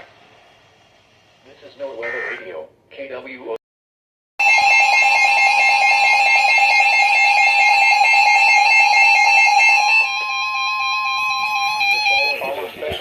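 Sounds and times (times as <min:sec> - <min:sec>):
rapidly pulsing alarm tone: 0:04.4 - 0:12.7
steady alarm tone: 0:04.4 - 0:12.7.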